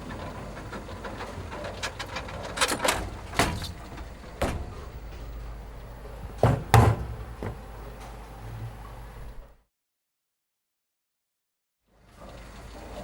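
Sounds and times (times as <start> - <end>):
steady low rumble: 3.3 - 8.0
sharp knocks: 3.4 - 5.4, 6.2 - 7.7.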